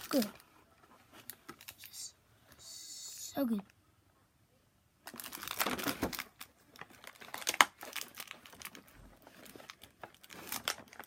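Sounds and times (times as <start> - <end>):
plastic packaging crinkling: 5.0 - 11.0.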